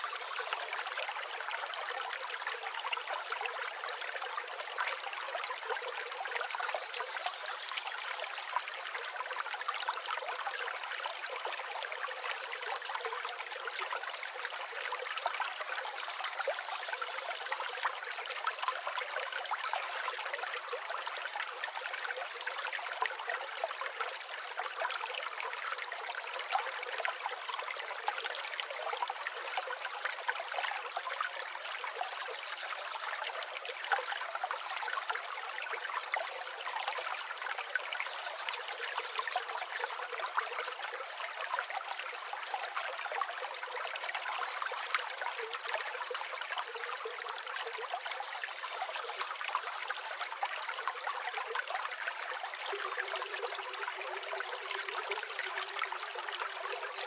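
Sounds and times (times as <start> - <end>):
river water flowing over stones: 0.0 - 57.0.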